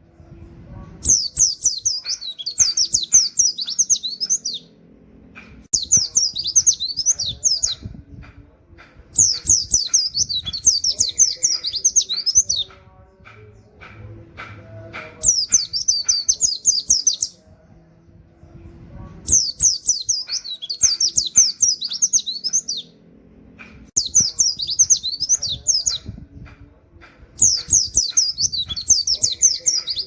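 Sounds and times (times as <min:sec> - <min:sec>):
bird chirping rapidly: 0:01.0 - 0:04.7, 0:05.7 - 0:07.8, 0:09.1 - 0:12.7, 0:19.3 - 0:22.9, 0:23.9 - 0:26.1, 0:27.4 - 0:30.0.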